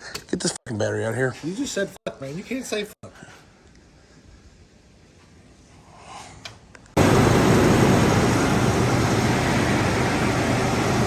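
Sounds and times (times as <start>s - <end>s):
truck engine idling: 7.0s - 11.0s.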